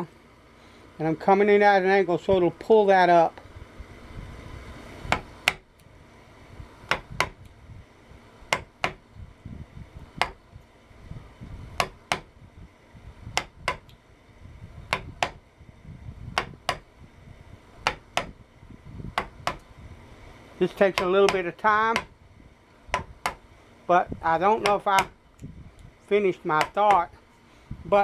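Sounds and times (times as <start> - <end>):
chisel strikes on wood: 5.1 - 5.6, 6.9 - 7.4, 8.5 - 9.0, 10.2 - 10.4, 11.8 - 12.3, 13.4 - 13.9, 14.9 - 15.4, 16.4 - 16.8, 17.8 - 18.4, 19.2 - 19.6, 20.9 - 22.1, 22.9 - 23.4, 24.6 - 25.2, 26.6 - 27.1.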